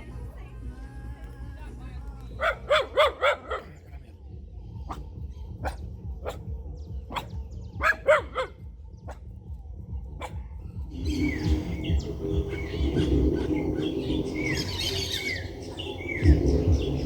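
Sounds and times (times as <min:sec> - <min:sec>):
dog barking: 0:02.4 - 0:03.9, 0:04.8 - 0:09.2, 0:10.2 - 0:10.5.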